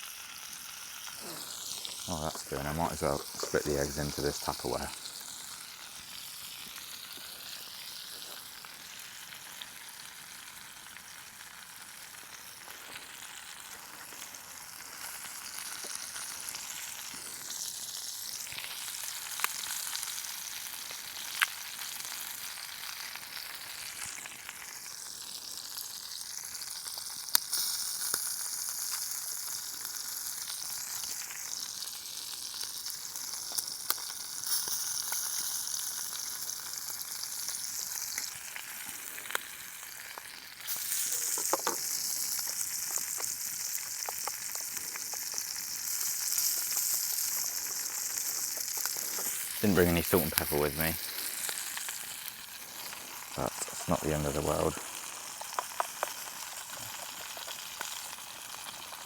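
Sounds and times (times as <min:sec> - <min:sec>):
steak sizzling in a pan: 0:00.0 - 0:59.0.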